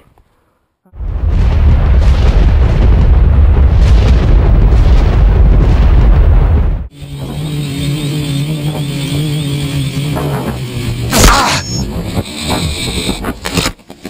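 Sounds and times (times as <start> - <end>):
quadcopter rushing noise: 6.9 - 14.0.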